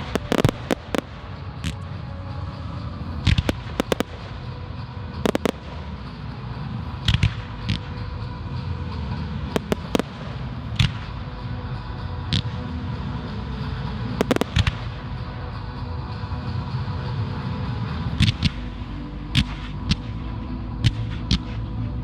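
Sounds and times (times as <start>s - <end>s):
firework bangs: 0.0s - 1.8s, 3.3s - 4.5s, 5.2s - 6.2s, 9.6s - 11.2s, 14.2s - 15.0s.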